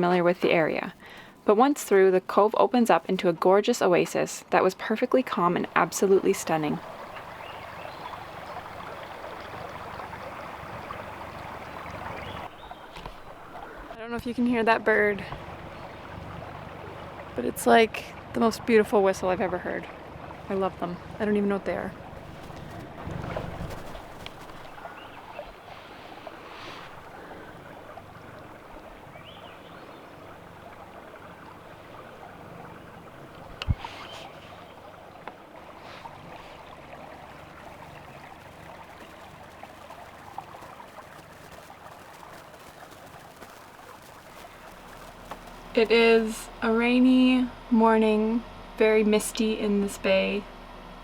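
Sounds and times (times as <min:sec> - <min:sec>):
water rushing: 0:05.0 - 0:47.2.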